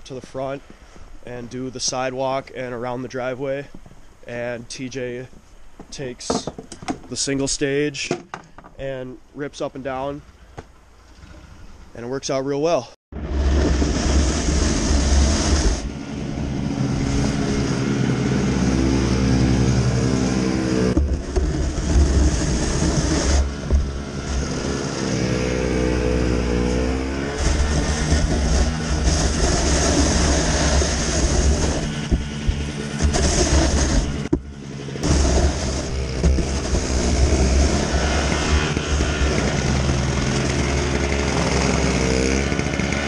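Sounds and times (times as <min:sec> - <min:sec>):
snowblower engine running: 0:13.1 - 0:43.0.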